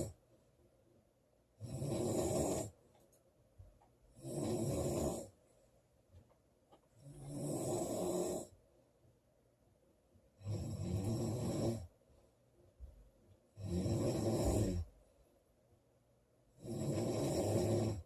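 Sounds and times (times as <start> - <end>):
girl snoring: 1.6 - 2.7, 4.2 - 5.3, 7.1 - 8.5, 10.4 - 11.9, 13.6 - 14.9, 16.6 - 18.0.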